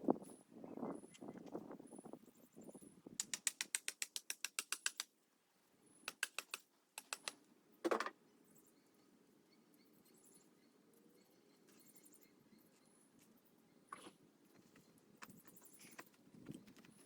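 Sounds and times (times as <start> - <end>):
rapid sharp clicks: 3.2 - 5.1, 6.1 - 7.4.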